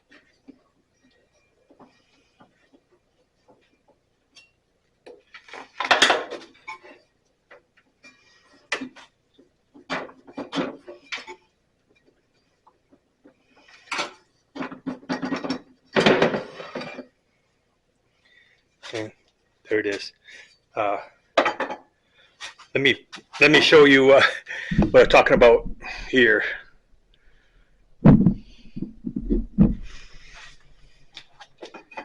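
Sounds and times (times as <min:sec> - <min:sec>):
metal tools clinking and clanking: 0:05.7 - 0:07.0.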